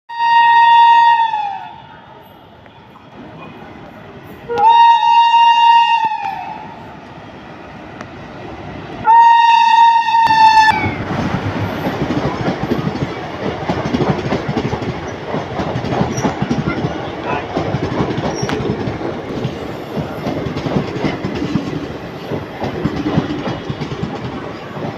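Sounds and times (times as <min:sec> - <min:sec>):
train horn blasts: 0:00.1 - 0:02.0, 0:04.5 - 0:06.8, 0:09.0 - 0:11.0
train wheels clacking over rails: 0:10.0 - 0:24.9.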